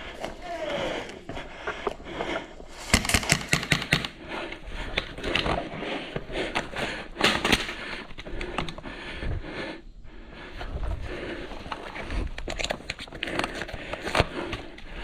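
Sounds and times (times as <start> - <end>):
airsoft gun shots: 2.8 - 4.2.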